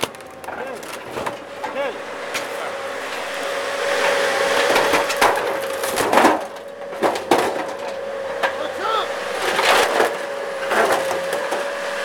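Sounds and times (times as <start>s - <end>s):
sharp cracks: 0.0s - 2.6s
excavator crushing car body: 0.0s - 12.0s.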